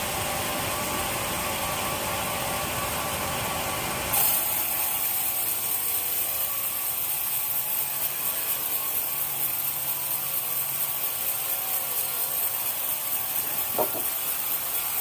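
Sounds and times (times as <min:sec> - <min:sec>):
sawmill saw cutting wood: 0:04.1 - 0:15.0.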